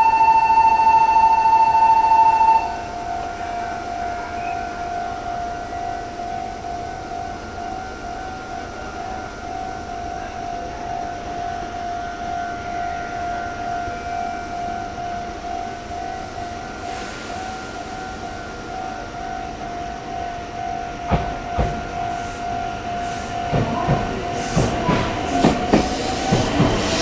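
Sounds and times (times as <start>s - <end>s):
level crossing alarm ringing: 0.0s - 27.0s
approaching train hiss: 16.6s - 27.0s.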